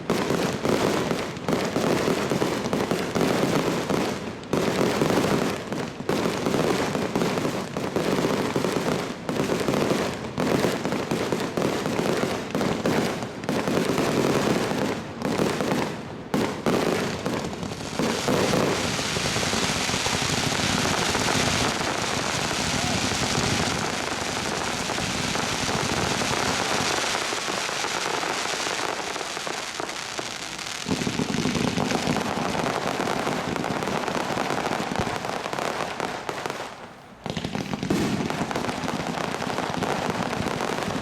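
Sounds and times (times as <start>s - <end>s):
fireworks banging and crackling: 0.0s - 41.0s.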